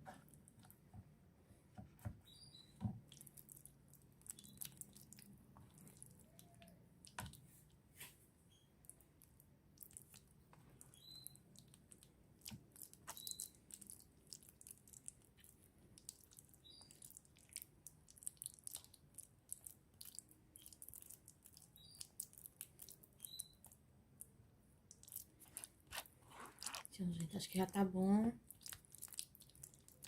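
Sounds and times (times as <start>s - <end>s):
faint bird chirps: 2.1s - 2.8s, 4.2s - 5.0s, 8.5s - 8.9s, 10.8s - 11.5s, 13.1s - 13.6s, 16.5s - 17.2s, 21.5s - 22.2s, 23.2s - 23.8s.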